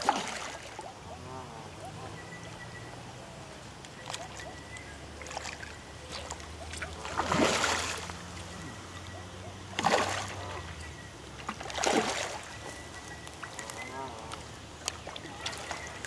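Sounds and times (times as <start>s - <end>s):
fish splashing at water surface: 0.0s - 0.9s, 3.9s - 8.6s, 9.7s - 16.0s.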